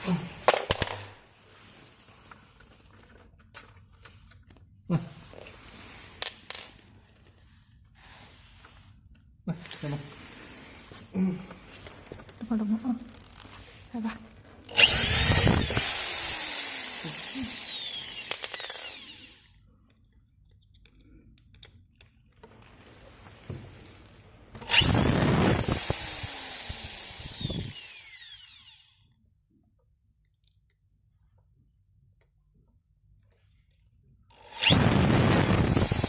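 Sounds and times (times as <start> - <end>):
electric drill driving screws into metal: 14.7 - 19.5, 24.6 - 29.0, 34.3 - 36.0.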